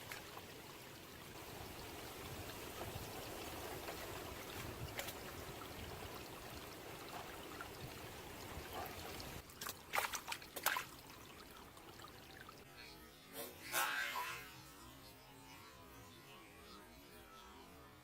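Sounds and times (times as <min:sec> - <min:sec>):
water trickling: 0:00.0 - 0:12.6.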